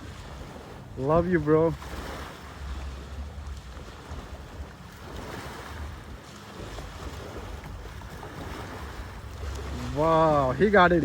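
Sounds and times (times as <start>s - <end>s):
sea surf washing: 0.0s - 11.0s
wind buffeting microphone: 0.0s - 11.0s.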